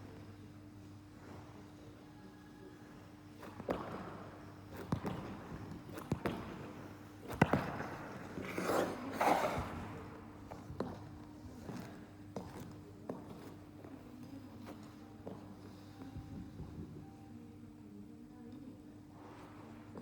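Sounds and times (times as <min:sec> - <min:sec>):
steady low hum: 0:00.0 - 0:20.0
skate blade scraping ice: 0:07.6 - 0:09.8.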